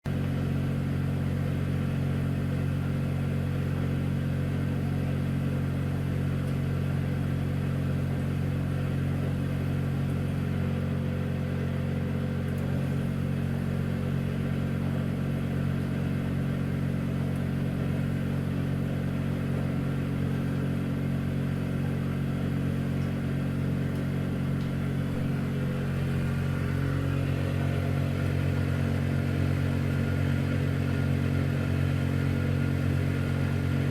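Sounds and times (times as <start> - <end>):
tumble dryer running: 7.6 - 33.9.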